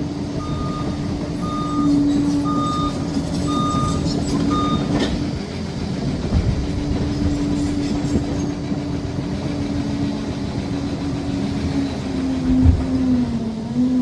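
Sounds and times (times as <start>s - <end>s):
diesel engine under load: 0.0s - 14.0s
reversing alarm beep: 0.4s - 5.0s
steel tracks clattering: 1.2s - 9.6s.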